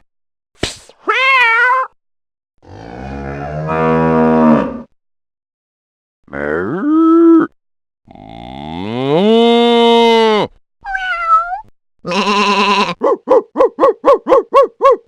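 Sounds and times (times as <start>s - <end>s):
cat meowing: 1.1s - 1.9s, 10.8s - 13.0s
cow mooing: 2.6s - 4.9s.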